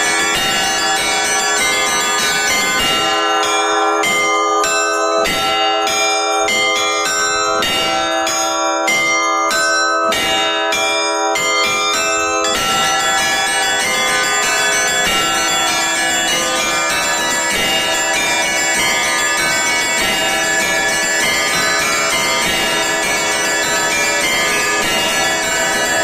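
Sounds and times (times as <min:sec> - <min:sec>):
bells ringing in a peal: 0:00.0 - 0:26.0.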